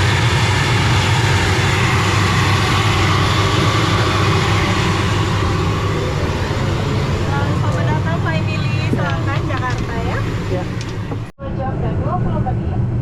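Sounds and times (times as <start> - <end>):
turboprop engines droning: 0.0 - 13.0.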